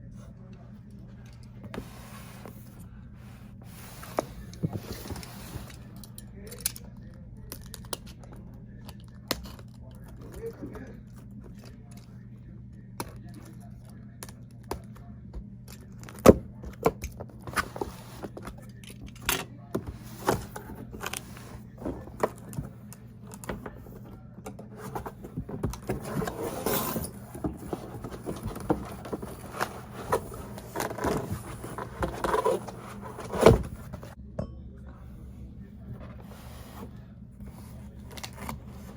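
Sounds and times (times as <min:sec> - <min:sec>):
steady low hum: 0:00.0 - 0:38.9
cardboard scraping and rustling: 0:01.6 - 0:06.0, 0:16.3 - 0:18.6, 0:19.8 - 0:34.2, 0:35.9 - 0:38.9.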